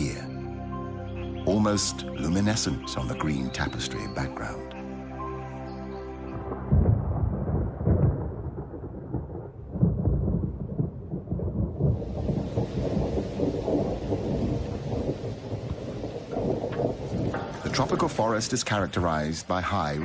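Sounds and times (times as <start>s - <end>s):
thunder rumbling: 6.3s - 20.0s
rain hissing: 11.4s - 20.0s.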